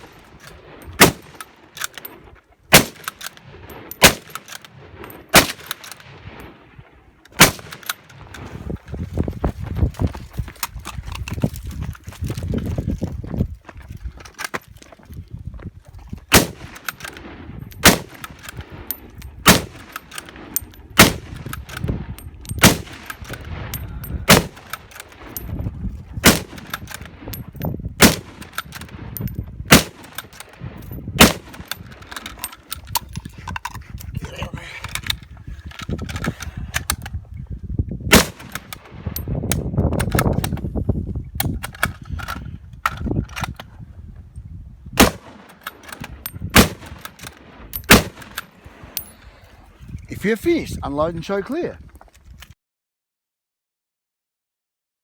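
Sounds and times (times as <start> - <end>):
rifle shots: 0.0 - 2.0, 2.7 - 6.6, 7.4 - 8.5, 16.3 - 25.4, 26.2 - 27.4, 28.0 - 32.0, 38.1 - 39.1, 45.0 - 48.4.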